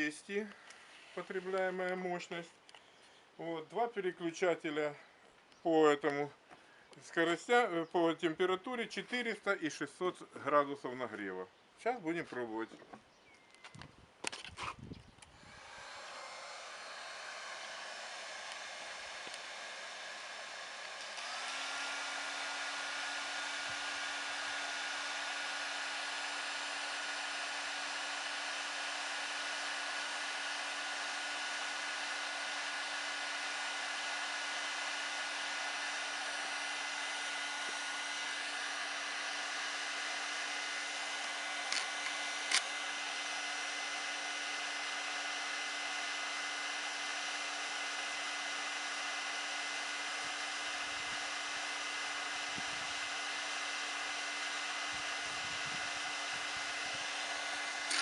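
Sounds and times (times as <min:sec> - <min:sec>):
heat gun blowing hiss: 0:00.0 - 0:02.0, 0:15.3 - 0:58.0
fan motor hum: 0:14.8 - 0:58.0
short clicks: 0:41.7 - 0:42.8.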